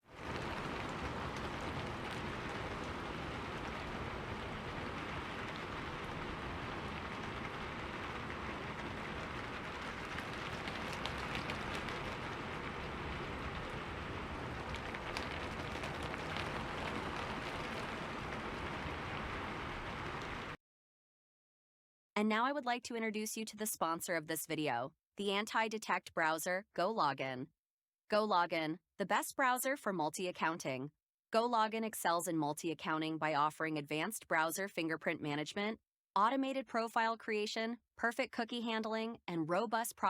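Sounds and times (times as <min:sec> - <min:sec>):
rain on street: 0:00.0 - 0:20.6.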